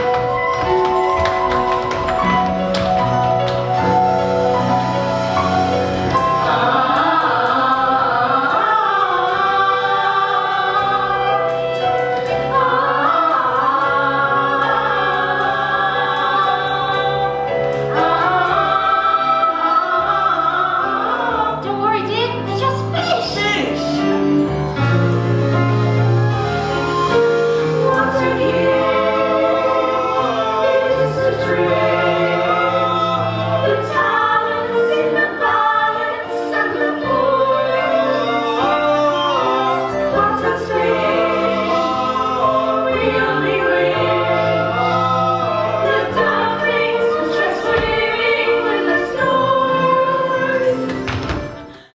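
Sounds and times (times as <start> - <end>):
low accompaniment: 0.0 - 20.7
choir singing in harmony: 0.0 - 52.0.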